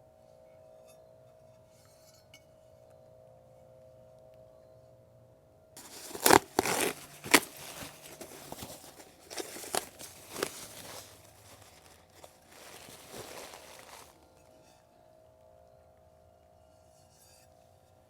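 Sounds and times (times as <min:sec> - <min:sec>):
plastic packaging tearing and crackling: 0:05.8 - 0:14.2.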